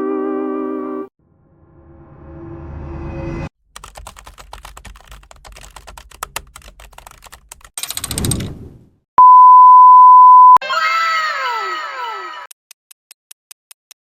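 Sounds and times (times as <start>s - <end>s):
keyboard rattling burst: 3.7s - 8.5s
censor bleep tone: 9.2s - 10.6s.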